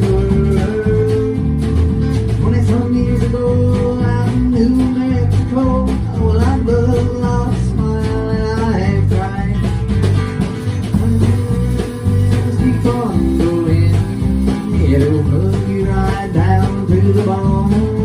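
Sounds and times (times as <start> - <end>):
bass guitar: 0.0 - 18.0
steady drum beat: 0.0 - 18.0
lead guitar with bent notes: 6.5 - 18.0.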